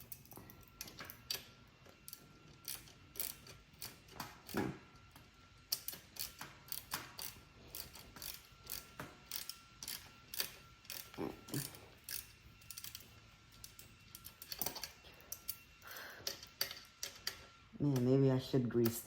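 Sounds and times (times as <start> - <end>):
metal clicks and clinks: 5.7 - 18.2.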